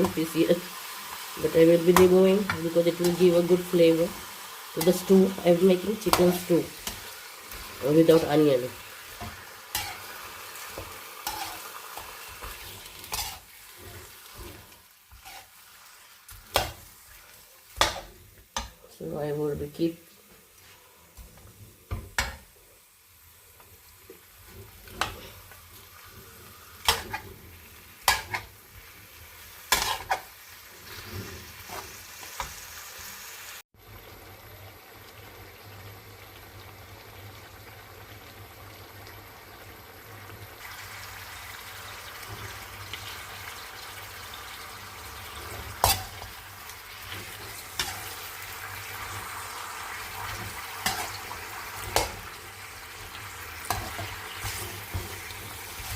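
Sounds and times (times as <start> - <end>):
chicken sizzling in hot oil: 0.0 - 55.9
spatula scraping a pan: 9.1 - 18.8, 24.4 - 28.6, 29.6 - 32.6, 45.4 - 52.4, 53.0 - 55.9.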